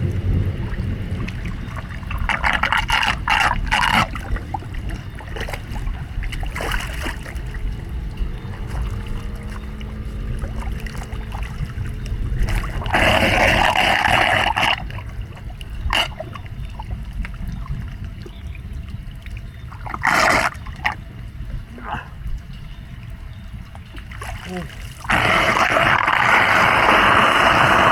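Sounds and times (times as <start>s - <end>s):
low rumble: 0.0s - 13.2s
water splashing and trickling: 0.0s - 27.9s.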